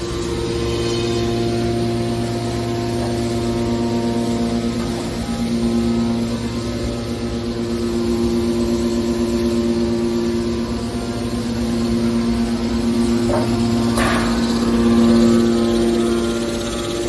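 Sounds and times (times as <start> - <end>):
hydraulic power unit humming: 0.0 - 17.0.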